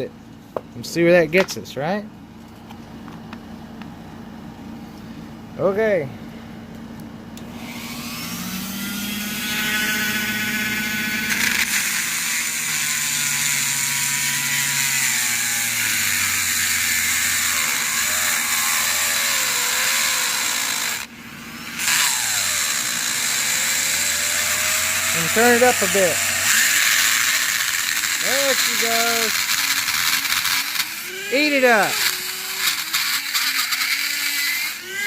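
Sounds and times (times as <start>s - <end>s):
electric drill grinding into lock: 7.4s - 35.0s.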